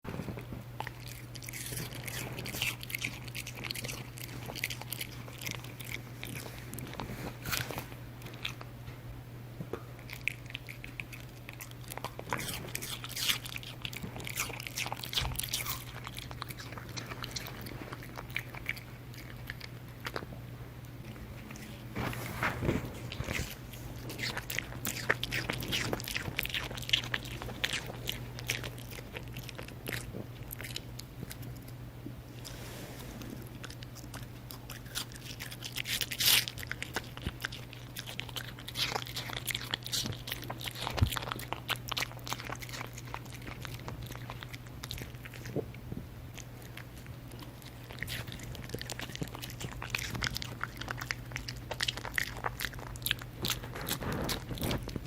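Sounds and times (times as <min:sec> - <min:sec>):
dog crunching pear: 0:00.0 - 0:09.0, 0:09.6 - 0:32.6, 0:33.2 - 0:55.0
steady low hum: 0:00.0 - 0:55.0.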